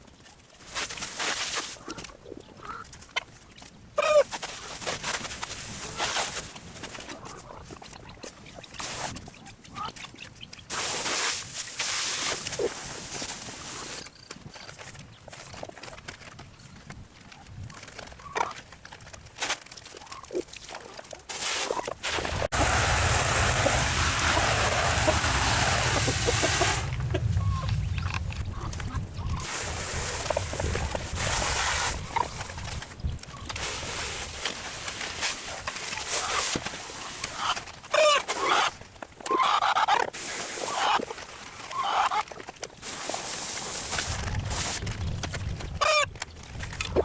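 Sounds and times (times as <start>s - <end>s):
chickens clucking: 4.0s - 4.2s, 22.6s - 32.7s, 37.0s - 40.1s, 40.7s - 41.0s, 41.7s - 42.2s, 45.6s - 46.1s.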